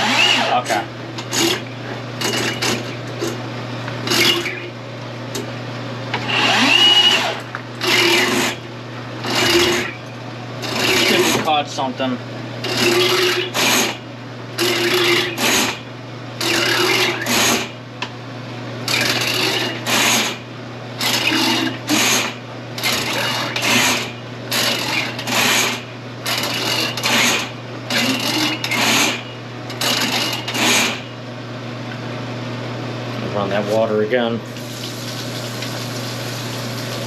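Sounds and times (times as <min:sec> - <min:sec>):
drain machine motor humming: 0:33.2 - 0:37.0.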